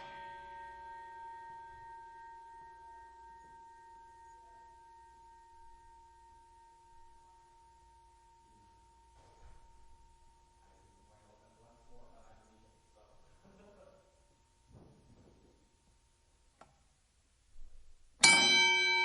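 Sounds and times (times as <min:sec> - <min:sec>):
boxing ring bell ringing: 0:00.0 - 0:11.4, 0:18.2 - 0:19.0.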